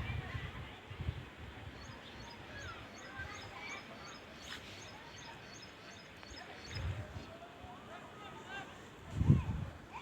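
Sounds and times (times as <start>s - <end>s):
small birds chirping: 1.8s - 7.0s.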